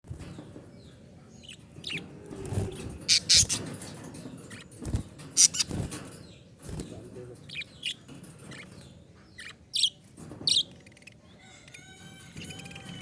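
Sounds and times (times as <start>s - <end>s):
parrots chirping and squawking: 1.4s - 3.8s, 4.5s - 5.9s.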